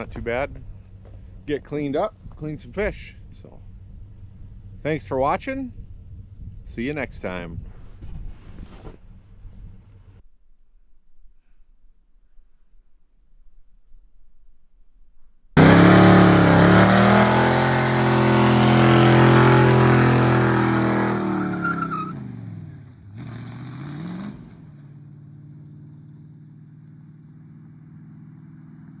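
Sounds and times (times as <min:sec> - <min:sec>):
faint steady engine note: 0:00.0 - 0:07.2, 0:24.4 - 0:29.0
engine revving high: 0:15.6 - 0:22.6.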